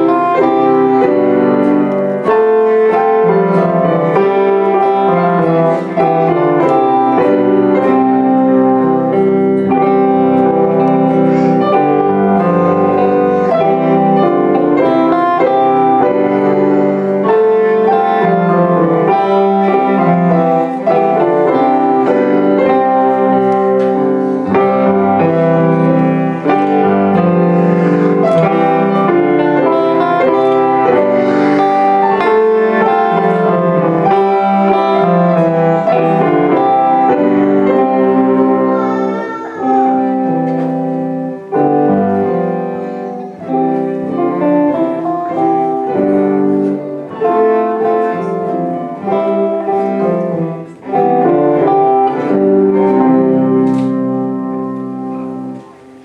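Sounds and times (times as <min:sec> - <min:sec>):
piano: 0:00.0 - 0:56.0
school ensemble playing: 0:00.0 - 0:56.0.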